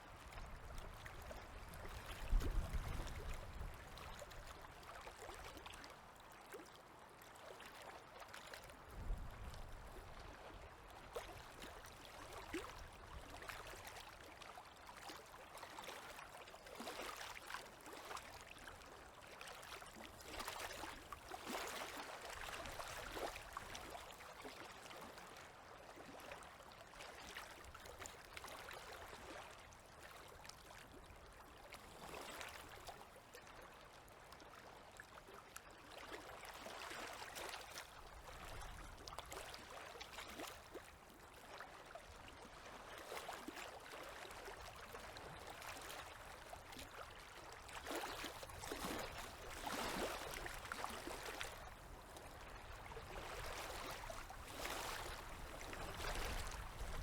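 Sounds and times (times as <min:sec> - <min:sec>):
river waves lapping: 0:19.3 - 0:24.0, 0:43.6 - 0:57.0.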